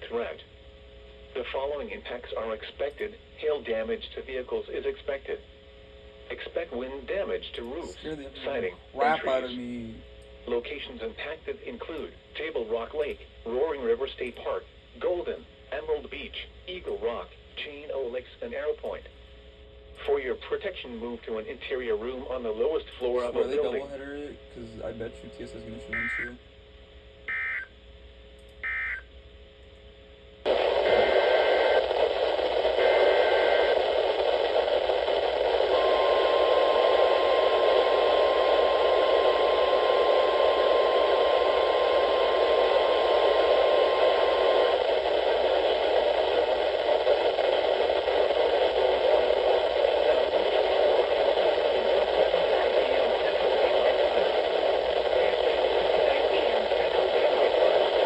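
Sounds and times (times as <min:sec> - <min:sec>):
radio static hiss: 0:01.2 - 0:05.5, 0:06.2 - 0:19.1, 0:20.0 - 0:26.5, 0:30.4 - 0:58.0
single-pitch warning alarm tone: 0:25.9 - 0:26.4, 0:27.3 - 0:27.8, 0:28.6 - 0:29.1.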